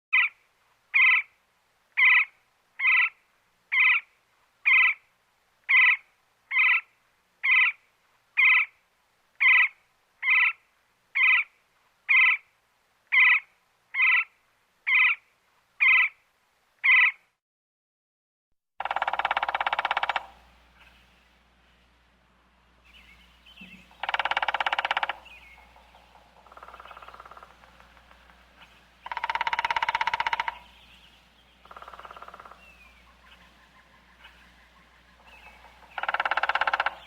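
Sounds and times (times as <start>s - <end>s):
woodpecker calling: 1.0s - 1.3s, 2.0s - 4.1s, 5.7s - 7.8s, 9.4s - 10.6s, 13.1s - 14.3s, 15.8s - 16.2s, 18.8s - 21.6s, 22.8s - 37.0s.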